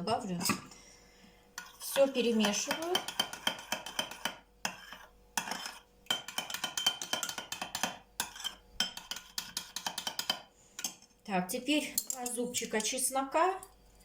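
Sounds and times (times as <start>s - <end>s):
spoon clinking and scraping bowl: 1.6s - 11.0s, 12.0s - 13.0s.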